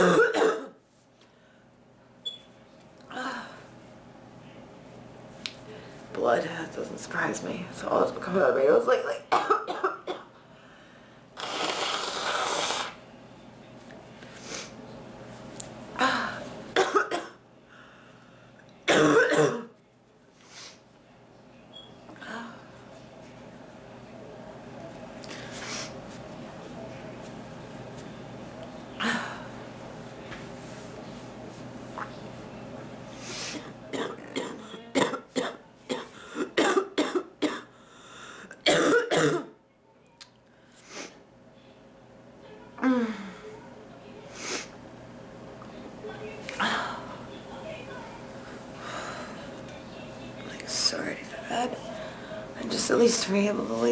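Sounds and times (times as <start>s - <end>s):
woman coughing: 0.0s - 0.8s, 9.3s - 10.3s, 16.0s - 17.4s, 18.9s - 19.7s, 33.6s - 37.7s, 38.6s - 39.6s.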